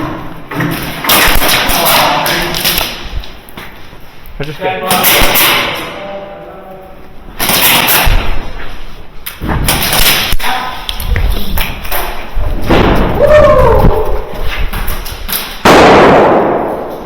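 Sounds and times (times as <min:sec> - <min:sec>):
loud thumps and knocks: 0:09.4 - 0:10.4, 0:11.0 - 0:16.9.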